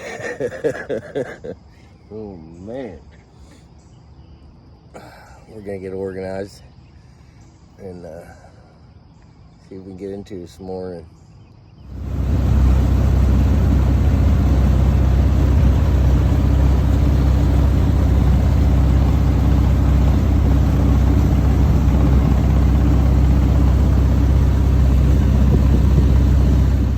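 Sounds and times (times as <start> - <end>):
boat motor droning: 11.9 - 26.9.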